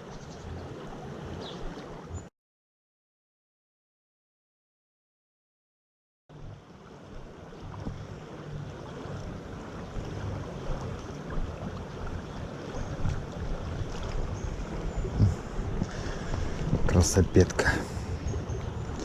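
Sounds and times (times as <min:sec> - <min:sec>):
wind rumble on microphone: 0:06.4 - 0:19.0.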